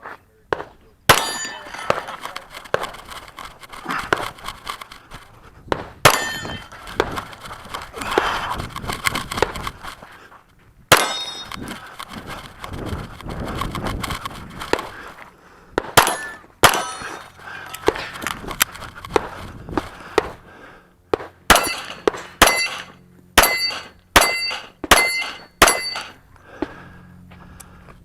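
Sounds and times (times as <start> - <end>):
pistol shots: 0.5 - 4.9, 5.7 - 7.8, 10.9 - 11.6, 15.8 - 18.0, 21.1 - 26.2
metallic ringing: 1.1 - 2.2, 6.0 - 6.8, 10.9 - 11.6, 16.0 - 17.4, 21.5 - 26.2
rustling and shuffling: 1.6 - 10.8, 11.4 - 15.4, 17.1 - 20.4.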